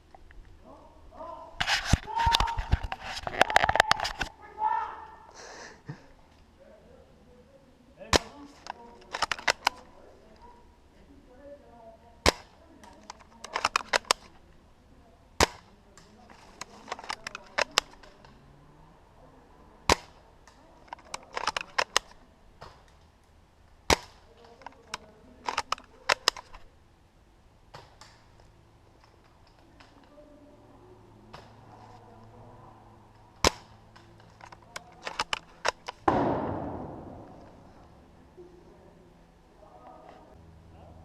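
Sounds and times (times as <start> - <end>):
airsoft gun shots: 36.0 - 37.6.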